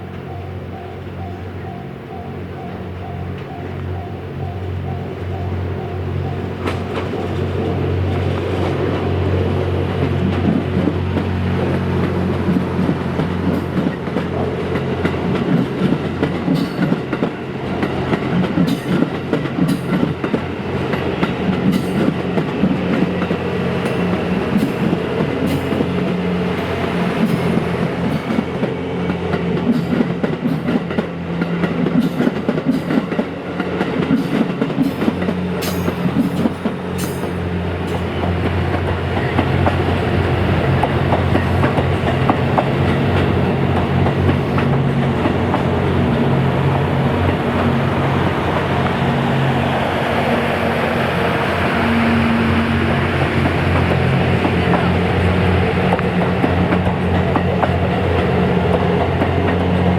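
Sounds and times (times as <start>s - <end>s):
low train engine hum: 0.0s - 59.9s
wheels clicking over rail joints: 6.0s - 46.2s, 53.2s - 59.9s.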